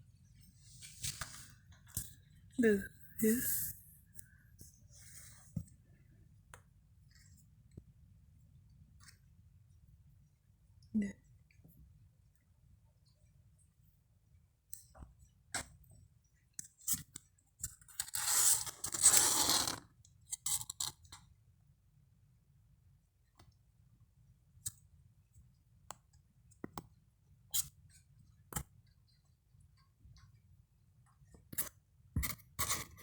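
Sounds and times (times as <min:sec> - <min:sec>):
scraping rustling noise: 0:00.5 - 0:02.1, 0:18.0 - 0:19.8.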